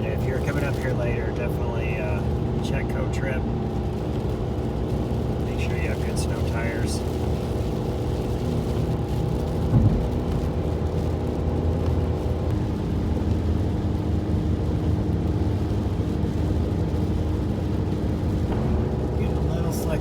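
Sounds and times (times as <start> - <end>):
car engine and tyres droning: 0.0 - 20.0
short thump: 9.7 - 10.4.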